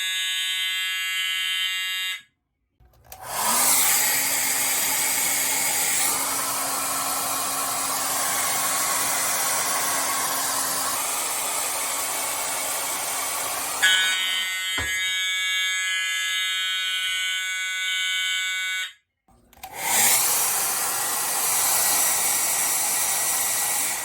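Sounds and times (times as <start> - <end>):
hair dryer blowing: 3.1 - 17.8, 19.6 - 24.0.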